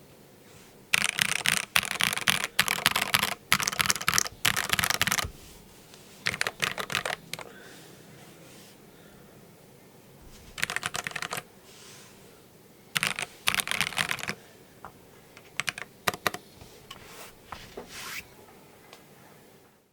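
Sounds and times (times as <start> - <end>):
mechanical keyboard typing: 0.9 - 5.3, 6.2 - 7.5, 10.5 - 11.4, 13.0 - 14.4, 15.4 - 16.4.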